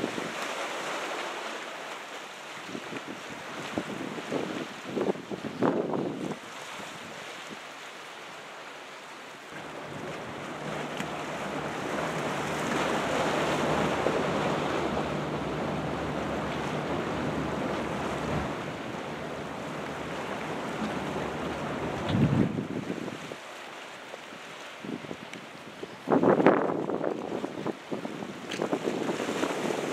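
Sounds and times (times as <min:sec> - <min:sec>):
ocean surf breaking: 0:00.0 - 0:25.6, 0:27.3 - 0:29.9
wind buffeting microphone: 0:09.6 - 0:23.4, 0:24.8 - 0:29.9.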